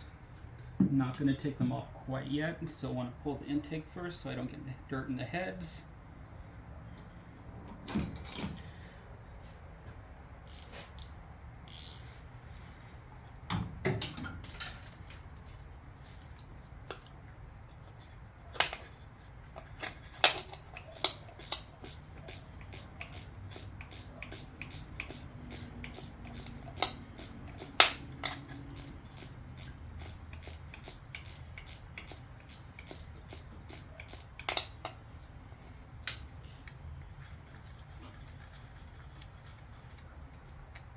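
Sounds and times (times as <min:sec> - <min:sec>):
socket wrench ratchet clicking: 0:10.5 - 0:11.1, 0:11.7 - 0:12.1, 0:20.2 - 0:34.9.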